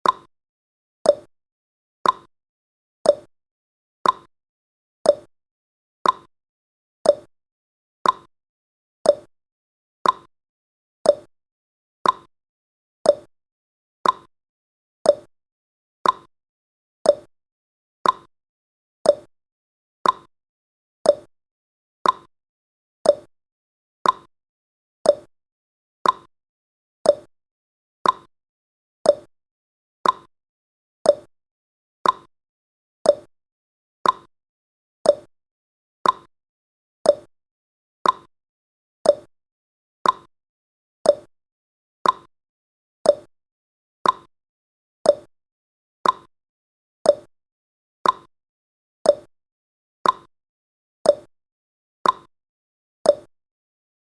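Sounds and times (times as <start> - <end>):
timer ticking: 0.0 - 0.3, 1.1 - 1.3, 2.0 - 2.3, 3.1 - 3.3, 4.0 - 4.3, 5.1 - 5.3, 6.0 - 6.3, 7.1 - 7.3, 8.0 - 8.3, 9.1 - 9.3, 10.0 - 10.3, 11.1 - 11.3, 12.0 - 12.3, 13.1 - 13.3, 14.0 - 14.3, 15.1 - 15.3, 16.0 - 16.3, 17.1 - 17.3, 18.0 - 18.3, 19.1 - 19.3, 20.0 - 20.3, 21.1 - 21.3, 22.0 - 22.3, 23.0 - 23.3, 24.0 - 24.3, 25.1 - 25.3, 26.0 - 26.3, 27.0 - 27.3, 28.0 - 28.3, 29.0 - 29.3, 30.0 - 30.3, 31.1 - 31.3, 32.0 - 32.3, 33.0 - 33.3, 34.0 - 34.3, 35.0 - 35.3, 36.0 - 36.3, 37.0 - 37.3, 38.0 - 38.3, 39.0 - 39.3, 40.0 - 40.3, 41.1 - 41.3, 42.0 - 42.3, 43.1 - 43.3, 44.0 - 44.3, 45.1 - 45.3, 46.0 - 46.3, 47.1 - 47.3, 48.0 - 48.3, 49.1 - 49.3, 50.0 - 50.3, 51.1 - 51.3, 52.0 - 52.3, 53.1 - 53.3.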